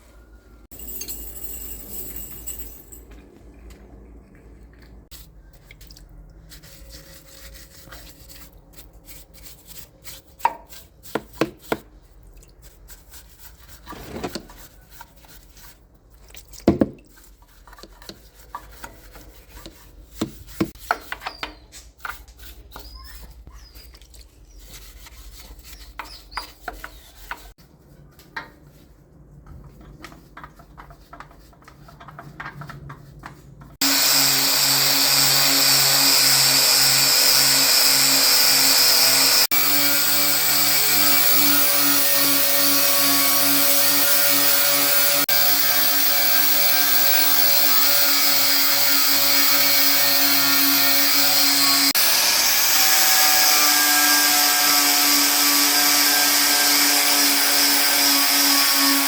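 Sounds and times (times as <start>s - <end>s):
hand tools and metal parts clinking: 0.7s - 4.1s.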